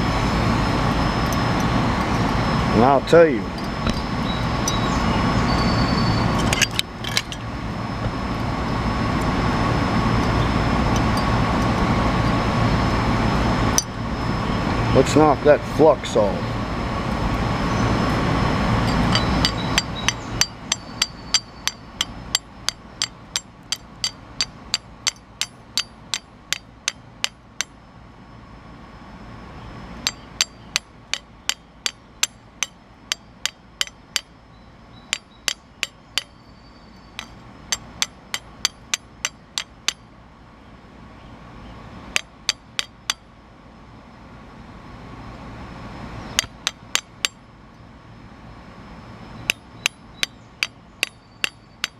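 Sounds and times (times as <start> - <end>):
hammer striking metal: 18.8 - 27.8, 30.0 - 34.3, 35.1 - 36.4, 37.2 - 40.0, 42.2 - 43.2, 46.4 - 47.4, 49.5 - 51.9.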